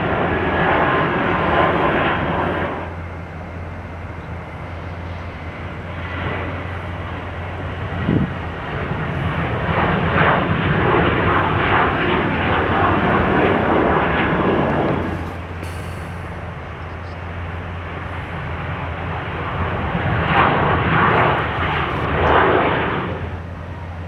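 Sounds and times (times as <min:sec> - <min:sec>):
jet engines rumbling: 0:00.0 - 0:24.0.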